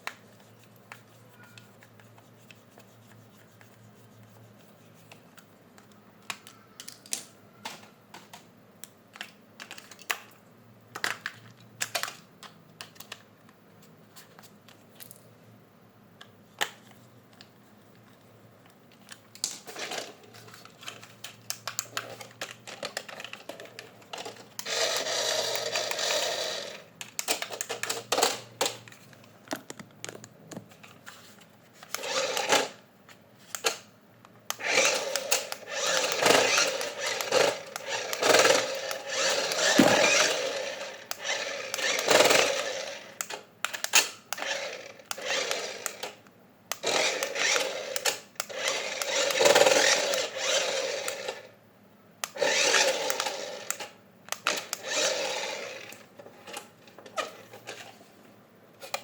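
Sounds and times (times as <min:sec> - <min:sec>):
plastic toys clicking and tapping: 0:05.1 - 0:13.3, 0:18.9 - 0:26.1.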